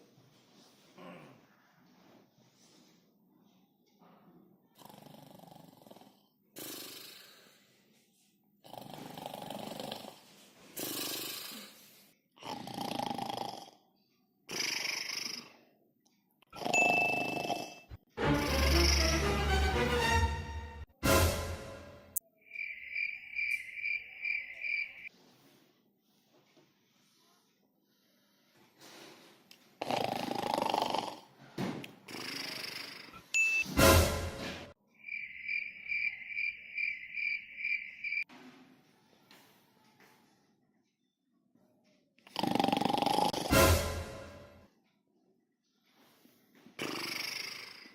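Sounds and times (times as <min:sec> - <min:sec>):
person snoring: 0:04.8 - 0:07.6, 0:08.6 - 0:10.2, 0:10.8 - 0:13.8, 0:14.5 - 0:15.6, 0:16.6 - 0:19.3, 0:29.8 - 0:31.4, 0:32.1 - 0:33.3, 0:42.3 - 0:43.6, 0:46.8 - 0:47.9
thin high whistle in snore: 0:16.6 - 0:17.9
cricket chirping: 0:22.4 - 0:25.1, 0:35.0 - 0:38.2.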